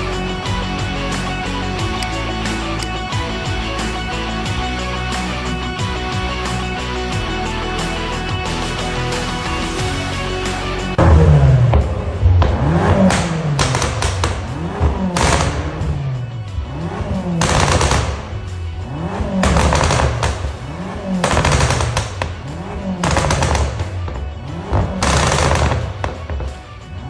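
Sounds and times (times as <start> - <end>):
car engine revving: 8.9 - 27.0
exhaust pops and crackles: 11.0 - 16.3, 17.0 - 26.8.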